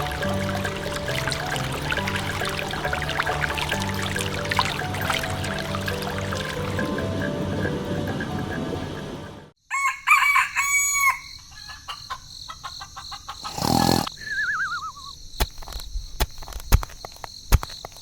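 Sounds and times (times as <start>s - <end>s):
background music: 0.0s - 9.6s
rooster crowing: 9.6s - 11.8s.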